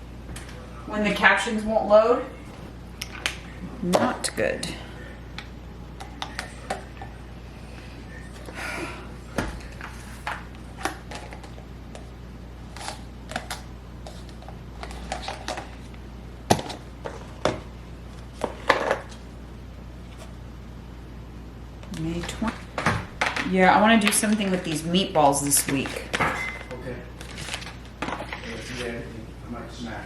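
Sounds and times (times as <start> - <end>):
steady low hum: 0.0 - 30.0
food containers clattering: 22.2 - 28.9.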